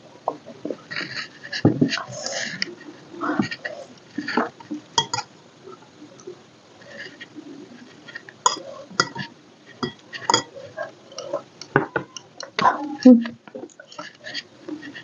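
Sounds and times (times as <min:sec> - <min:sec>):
dishes clinking: 0:04.2 - 0:05.3, 0:08.4 - 0:14.1.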